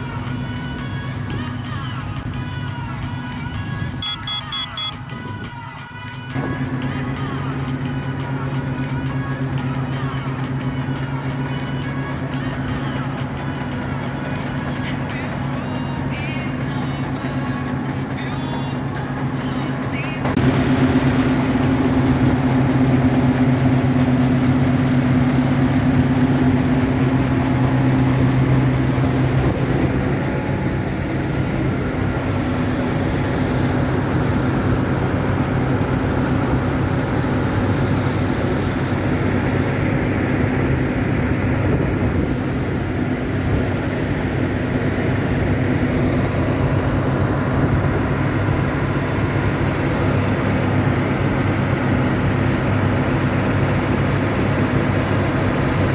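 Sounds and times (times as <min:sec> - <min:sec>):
harvest machine engine running: 0:00.0 - 0:55.9
strong low hum: 0:20.2 - 0:55.9.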